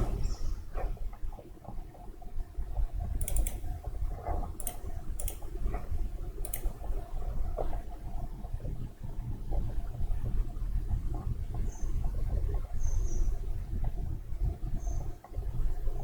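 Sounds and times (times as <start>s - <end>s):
low steady hum: 0.0s - 16.0s
computer mouse clicks: 3.2s - 3.8s, 4.6s - 5.6s, 6.4s - 6.8s.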